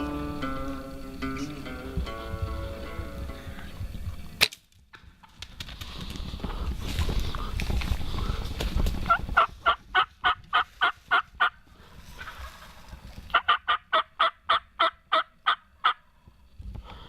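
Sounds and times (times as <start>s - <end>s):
turkey yelps: 9.1s - 11.5s, 13.3s - 16.0s.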